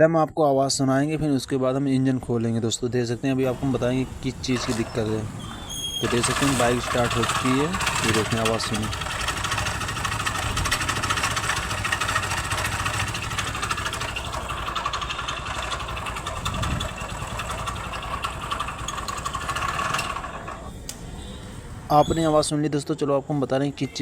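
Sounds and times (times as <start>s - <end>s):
motorcycle engine knocking idle: 6.1s - 20.4s.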